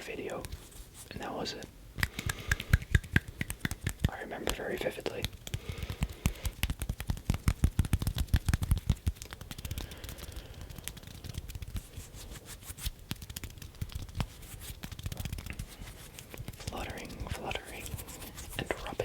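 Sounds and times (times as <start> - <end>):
hands fluttering near microphone: 2.0 - 19.0.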